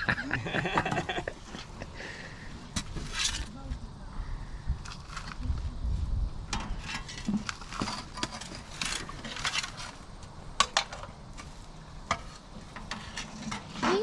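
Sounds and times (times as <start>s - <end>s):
digging among rocks and mud: 6.5s - 10.8s.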